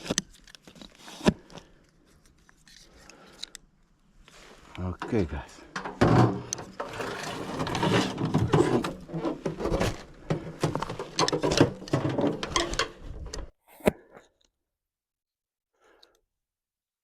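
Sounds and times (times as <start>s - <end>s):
hard objects clattering: 5.7s - 13.0s.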